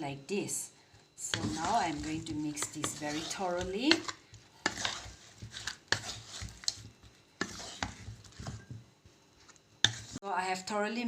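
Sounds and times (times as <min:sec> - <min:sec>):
wet squelches mixing fish by hand: 0:01.2 - 0:08.7.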